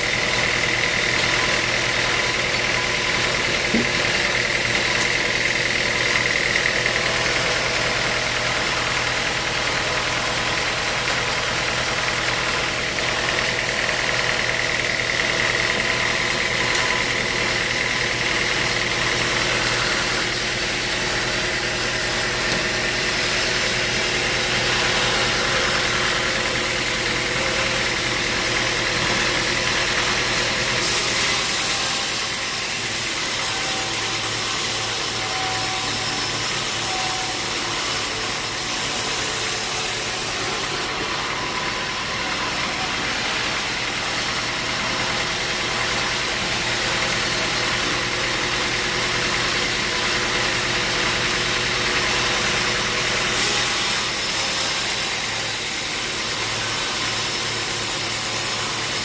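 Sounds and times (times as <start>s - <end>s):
sawmill hiss: 30.7s - 44.9s, 53.4s - 59.0s
machinery hum: 34.1s - 48.8s.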